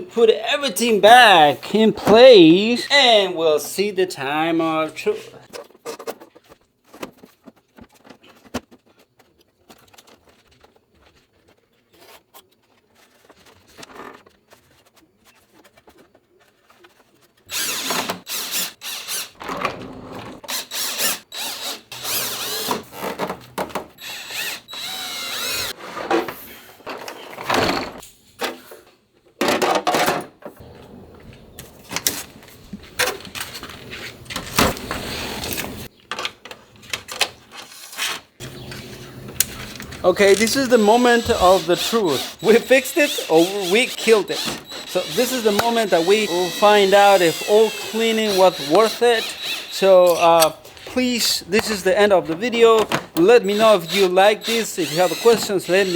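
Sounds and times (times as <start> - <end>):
cordless drill whining: 17.5 - 19.4, 20.5 - 22.8, 24.0 - 25.8, 38.4 - 55.9.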